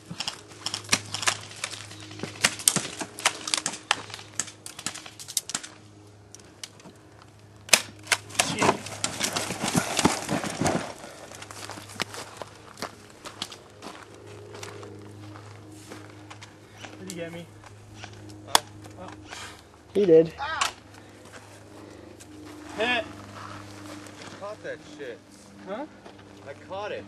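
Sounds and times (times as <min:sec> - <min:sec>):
airsoft guns firing: 0:00.1 - 0:05.7.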